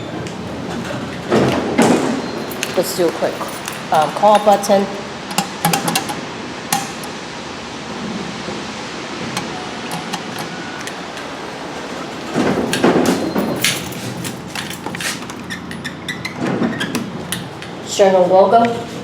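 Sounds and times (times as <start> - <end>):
indoor lobby background hiss: 0.0 - 14.5.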